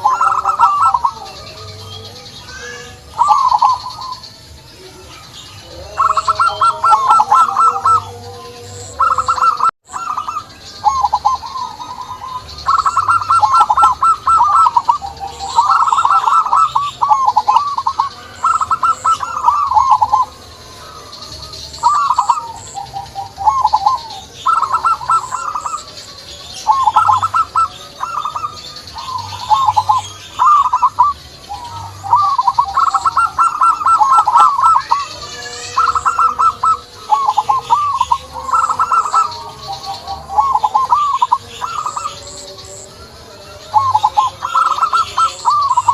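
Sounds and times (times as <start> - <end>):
doves calling with warbling phrases: 0.0 - 45.9
high chirping: 0.0 - 45.9.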